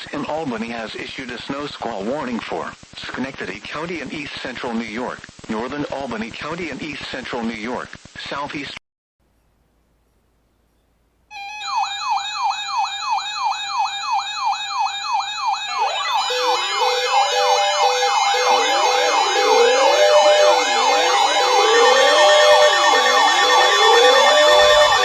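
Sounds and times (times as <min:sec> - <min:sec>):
electronic siren yelp: 0:11.3 - 0:25.0
wailing siren: 0:11.4 - 0:25.0.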